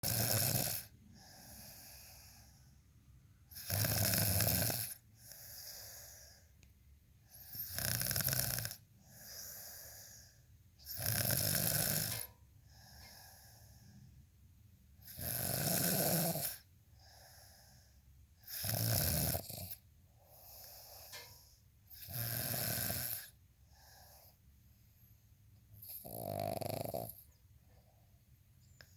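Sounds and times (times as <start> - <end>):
rasping snores: 0.0 - 2.3, 3.5 - 6.2, 7.3 - 10.2, 10.8 - 12.3, 15.0 - 17.5, 18.4 - 21.3, 21.9 - 24.3, 25.8 - 27.3
soft breath: 1.0 - 3.0, 5.1 - 7.7, 8.9 - 10.6, 12.2 - 14.3, 16.6 - 18.2, 20.2 - 21.7, 23.3 - 26.0.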